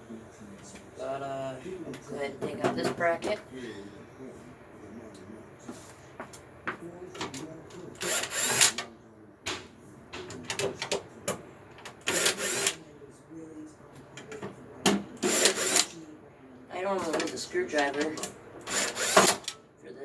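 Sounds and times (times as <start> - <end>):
handling clicks and knocks: 9.5 - 12.0
cordless drill running: 12.1 - 12.7, 15.2 - 15.8, 18.7 - 19.4.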